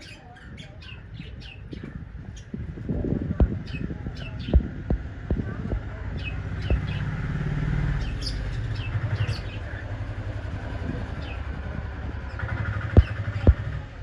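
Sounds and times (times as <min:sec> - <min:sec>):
birds chirping: 0:00.0 - 0:14.0
low engine hum: 0:02.5 - 0:14.0
sharp knocks: 0:12.4 - 0:13.8.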